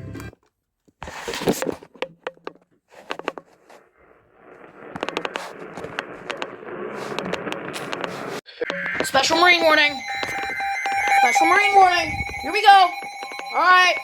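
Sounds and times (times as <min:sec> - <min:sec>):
radio static crackles and clicks: 0:01.3 - 0:14.0
radio hiss: 0:04.2 - 0:12.6.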